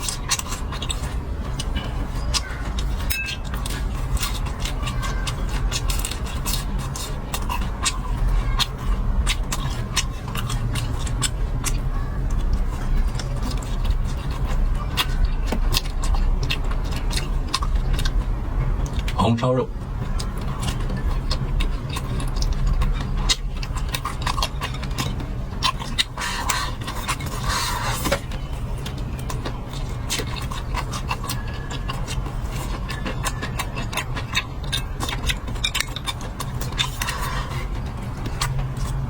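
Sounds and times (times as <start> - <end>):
utensils on dishes: 0.0 - 11.8
chewing crunches: 0.0 - 39.0.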